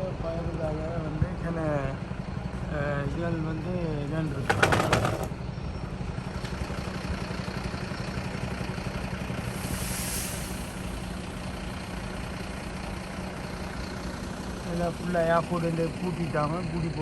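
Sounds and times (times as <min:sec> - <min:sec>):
heavy vehicle engine idling: 0:00.0 - 0:17.0
brief hiss: 0:09.4 - 0:11.2.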